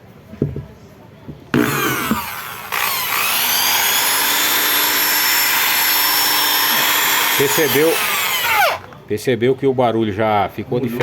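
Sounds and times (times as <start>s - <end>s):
electric drill whine: 1.6s - 8.9s.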